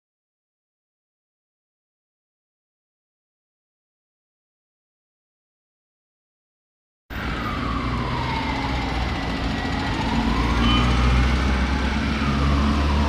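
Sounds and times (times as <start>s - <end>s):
emergency siren wailing: 7.1s - 13.0s
street traffic rumble: 7.1s - 13.0s.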